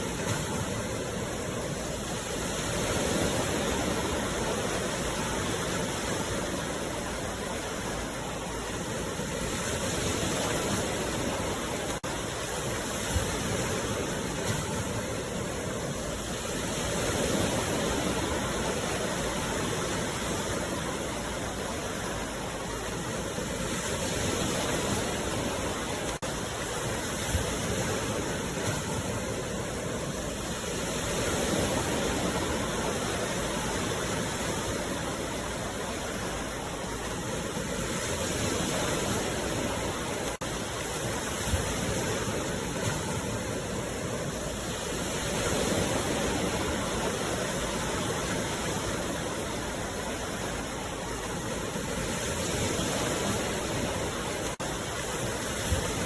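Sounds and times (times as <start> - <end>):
sea waves washing ashore: 0.0 - 56.0.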